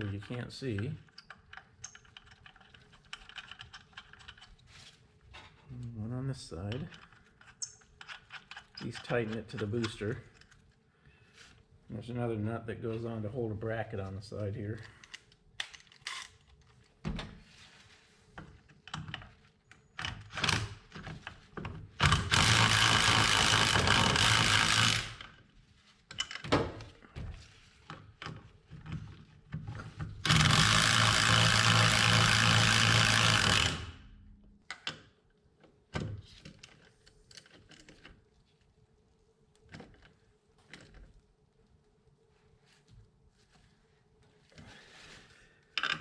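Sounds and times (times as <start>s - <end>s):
sockets and wrenches clicking: 0.3s - 4.6s, 22.0s - 25.4s, 30.2s - 34.0s
power tool running: 22.0s - 25.2s, 30.2s - 34.0s.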